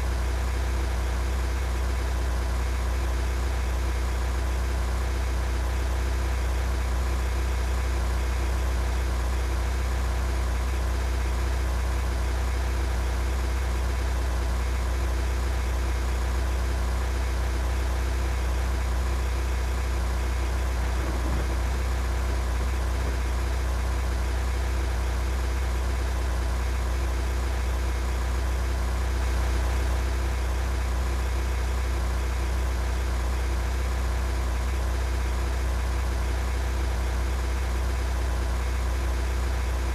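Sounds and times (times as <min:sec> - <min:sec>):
vehicle engine droning: 0:08.0 - 0:39.9.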